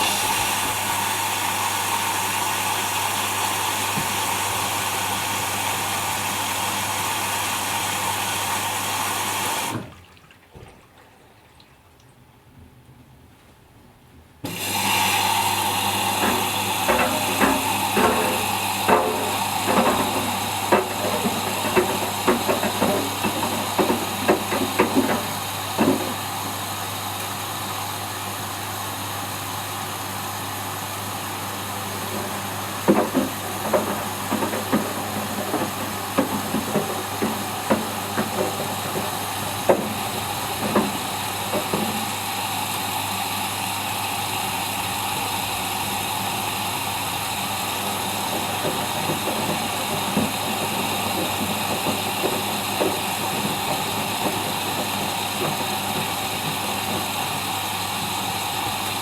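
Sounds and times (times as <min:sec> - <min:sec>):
washing machine drum humming: 0:00.0 - 0:12.0, 0:14.4 - 0:59.0
load knocking in drum: 0:15.6 - 0:26.3, 0:31.9 - 0:42.2, 0:47.8 - 0:58.2.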